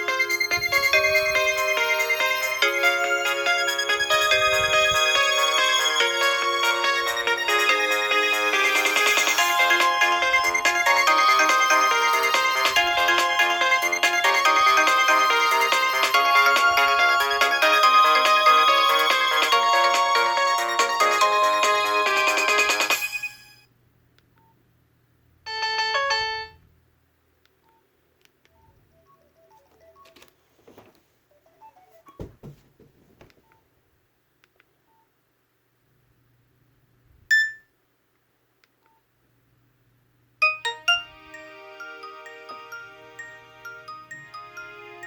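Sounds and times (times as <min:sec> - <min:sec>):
polyphonic phone ringtone: 0:00.0 - 0:23.6, 0:25.5 - 0:26.6, 0:40.4 - 0:45.0
short beep: 0:37.3 - 0:37.7.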